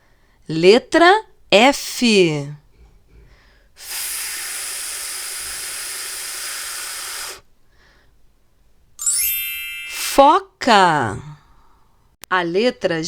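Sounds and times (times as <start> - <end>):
woman making f hiss: 3.8 - 7.5.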